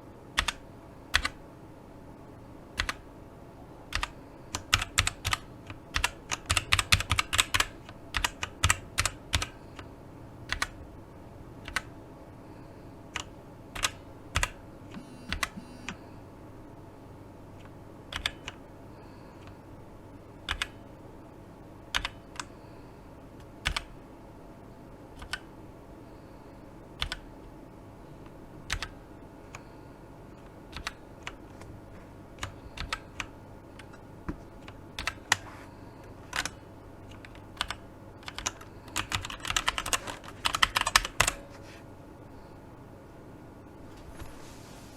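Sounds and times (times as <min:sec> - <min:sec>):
mechanical keyboard keystrokes: 0:00.4 - 0:01.4, 0:02.8 - 0:03.0, 0:03.9 - 0:09.5, 0:10.5 - 0:10.8, 0:11.6 - 0:11.9, 0:13.1 - 0:16.0, 0:18.1 - 0:18.6, 0:20.5 - 0:20.8, 0:21.9 - 0:22.5, 0:23.6 - 0:23.9, 0:25.2 - 0:25.5, 0:27.0 - 0:27.2, 0:28.7 - 0:28.9, 0:30.7 - 0:31.4, 0:34.6 - 0:35.4, 0:36.3 - 0:41.4.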